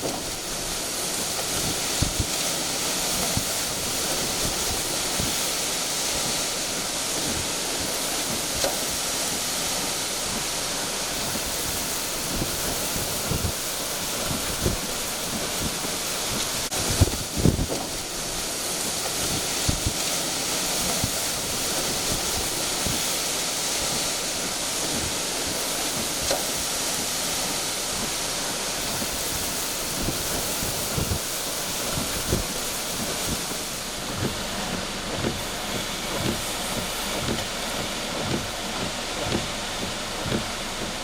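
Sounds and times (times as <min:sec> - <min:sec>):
wind and driving rain: 0:00.0 - 0:41.0
wind gusts buffeting microphone: 0:11.2 - 0:27.4, 0:28.8 - 0:34.4.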